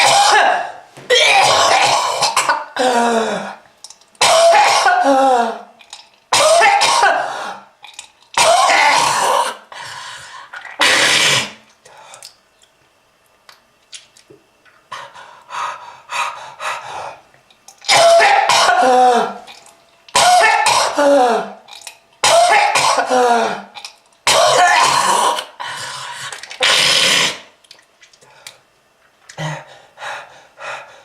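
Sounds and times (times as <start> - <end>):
person coughing hard: 0.0 - 3.6, 4.2 - 5.6, 6.3 - 7.6, 8.4 - 9.6, 10.8 - 11.6, 17.9 - 19.5, 20.1 - 21.6, 22.2 - 23.7, 24.3 - 25.5.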